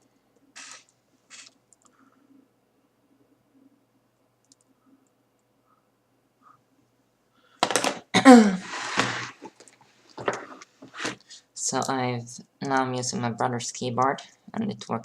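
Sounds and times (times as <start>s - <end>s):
person vocal outburst: 8.1s - 8.7s.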